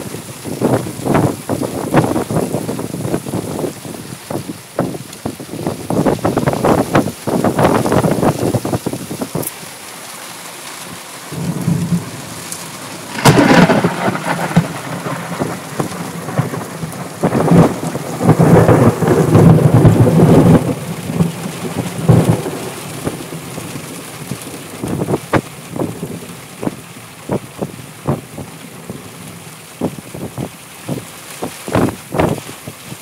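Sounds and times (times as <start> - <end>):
thunder rumbling: 0.0 - 9.4, 11.3 - 33.0
rain: 0.0 - 33.0.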